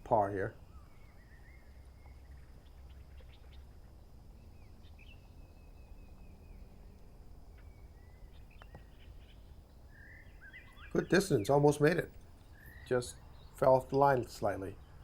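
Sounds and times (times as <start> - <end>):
birds chirping: 0.0 - 15.0
bird warbling call: 7.5 - 13.6.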